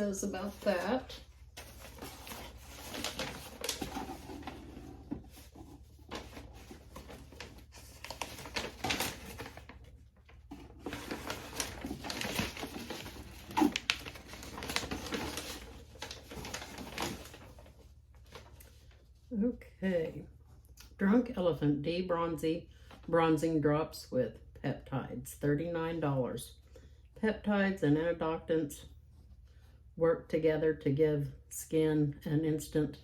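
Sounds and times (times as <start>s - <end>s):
packaging rustling and clicking: 1.5s - 17.7s.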